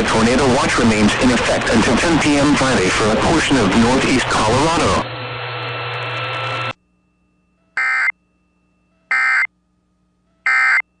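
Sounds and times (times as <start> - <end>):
radio static hiss: 0.0 - 5.0
faint steady tones: 6.8 - 11.0.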